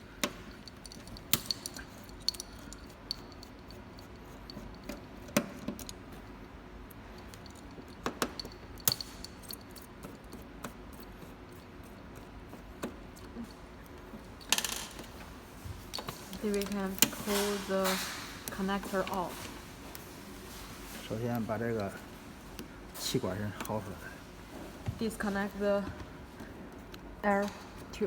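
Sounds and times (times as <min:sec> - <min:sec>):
screwdriver clicks and metallic clinks: 0:00.2 - 0:06.0, 0:07.1 - 0:10.4, 0:15.9 - 0:19.2, 0:23.1 - 0:24.1.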